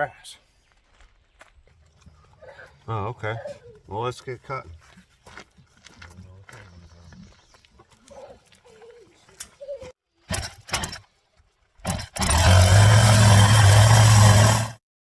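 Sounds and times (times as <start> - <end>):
chainsaw engine running: 10.3 - 11.0, 11.8 - 14.8.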